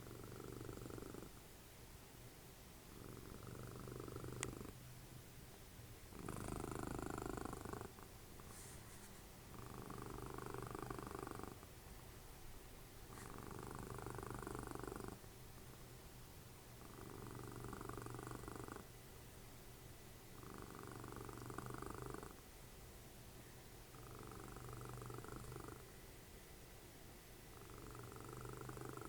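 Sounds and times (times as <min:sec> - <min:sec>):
cat purring: 0:00.0 - 0:01.4, 0:02.8 - 0:04.8, 0:06.0 - 0:11.8, 0:13.0 - 0:15.3, 0:16.7 - 0:19.0, 0:20.3 - 0:22.4, 0:23.9 - 0:26.0, 0:27.4 - 0:29.0.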